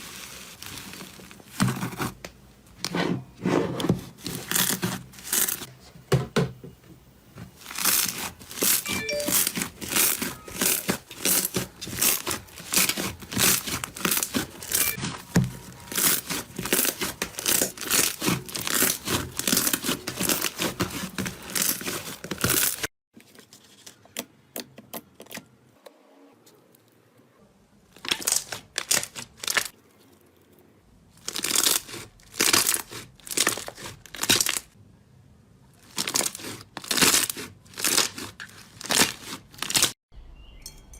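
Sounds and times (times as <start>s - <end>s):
slime crackling and popping: 15.8s - 22.8s, 28.0s - 29.8s, 31.2s - 34.8s, 35.8s - 39.9s.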